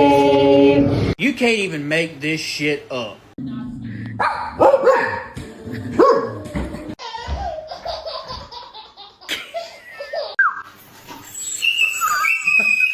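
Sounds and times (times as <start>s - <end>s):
person laughing: 9.3s - 10.4s.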